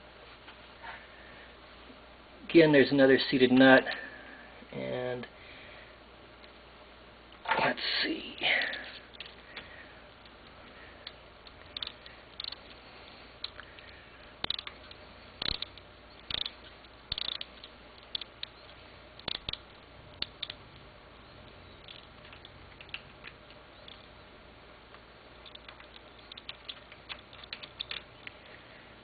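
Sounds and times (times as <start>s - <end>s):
hand tool clicking on screw: 15.4s - 16.5s.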